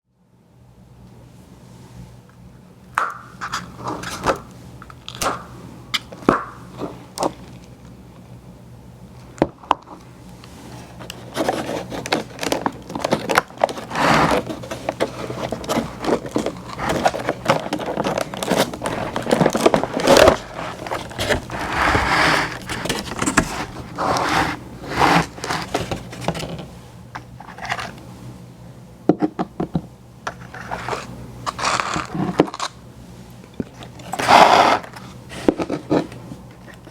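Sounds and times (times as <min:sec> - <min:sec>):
crackling and munching ice cream: 0:03.0 - 0:08.4, 0:09.2 - 0:26.4, 0:30.4 - 0:36.9.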